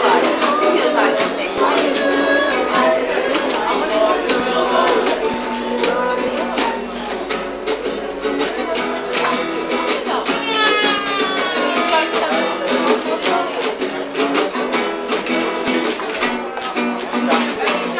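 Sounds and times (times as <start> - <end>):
band playing music: 0.0 - 13.8
strummed guitar: 0.0 - 17.9.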